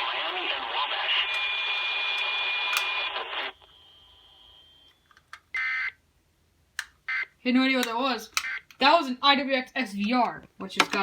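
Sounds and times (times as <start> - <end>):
hissy radio broadcast audio: 0.0 - 3.7
faint hum: 0.0 - 7.5.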